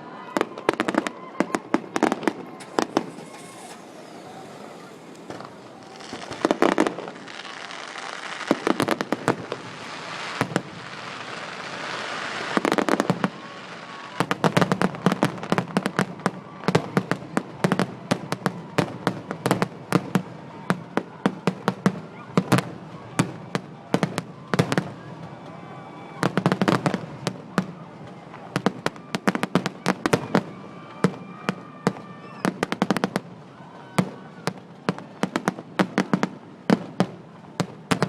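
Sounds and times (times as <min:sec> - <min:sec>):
fireworks bursting: 0:00.0 - 0:38.0
rapid barrage of bangs: 0:00.7 - 0:09.8
crackling hiss: 0:02.1 - 0:15.9.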